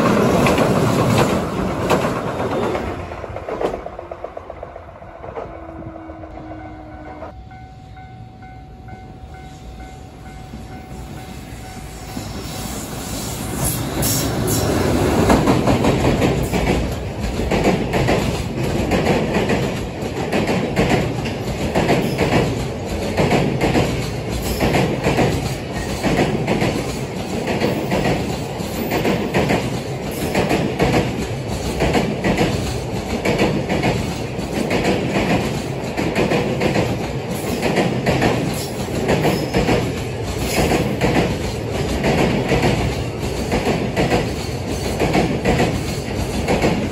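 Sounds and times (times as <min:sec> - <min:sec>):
electric train passing: 0:00.0 - 0:46.9.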